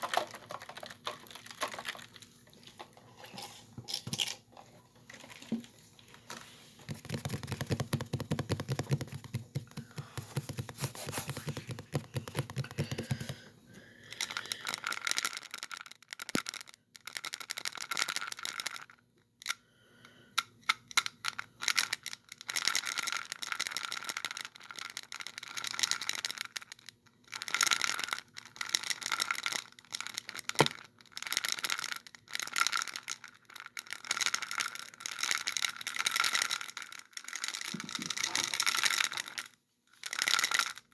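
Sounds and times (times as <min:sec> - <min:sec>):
tapping and scratching on laptop: 0:06.8 - 0:13.4.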